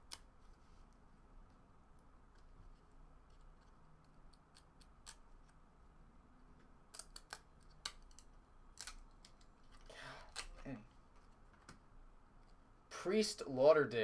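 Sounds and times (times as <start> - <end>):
cardboard cards clicking and snapping: 3.4 - 5.2, 6.9 - 10.7.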